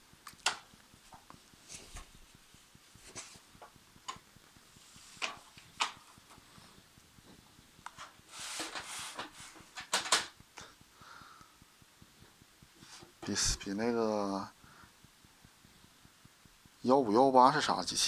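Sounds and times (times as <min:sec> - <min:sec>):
plastic clicks and knocks: 0:00.3 - 0:01.3, 0:07.9 - 0:10.4
scraping and rustling: 0:00.4 - 0:10.3.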